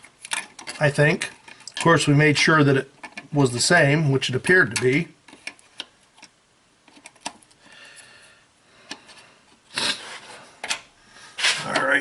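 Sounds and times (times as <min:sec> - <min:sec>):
small clicks of parts handled: 0:00.0 - 0:01.9, 0:04.7 - 0:07.6.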